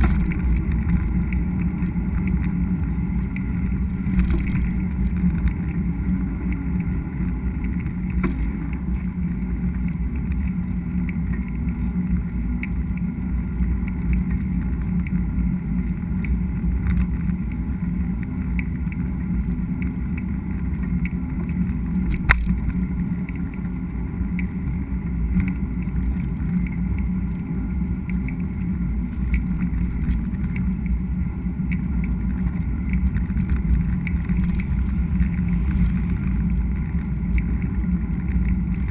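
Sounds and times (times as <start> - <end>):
bike rattles: 0.0 - 9.2, 32.1 - 38.9
tyres rumbling on trail: 0.0 - 38.9
wind on microphone: 0.0 - 38.9.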